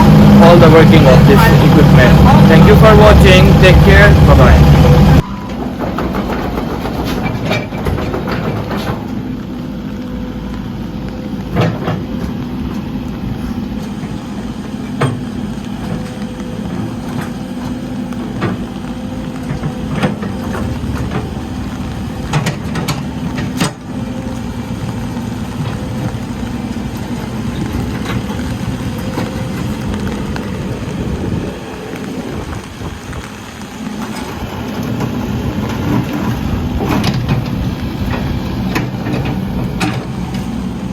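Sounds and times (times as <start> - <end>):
excavator diesel engine running: 0.0 - 40.9.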